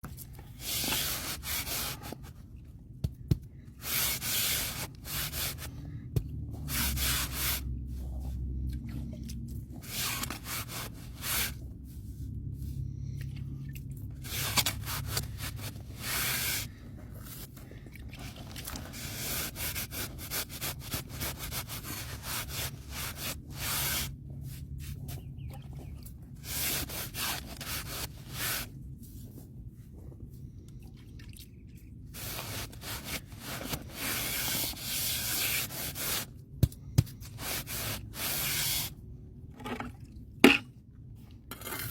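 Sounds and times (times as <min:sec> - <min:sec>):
tool scraping rough surface: 0:06.7 - 0:08.3, 0:14.2 - 0:17.5, 0:18.7 - 0:24.1, 0:26.4 - 0:28.7, 0:32.2 - 0:36.2.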